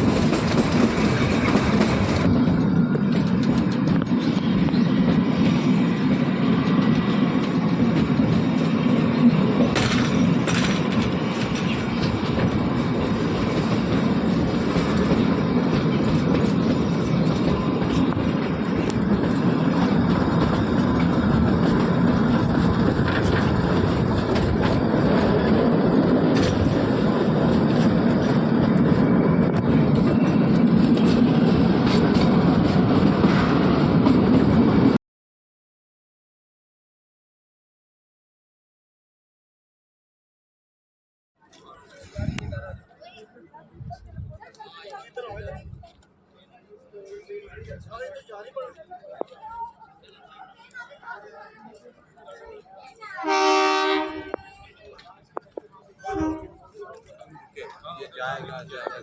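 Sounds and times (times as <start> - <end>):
train wheels rumbling: 0.0 - 35.0.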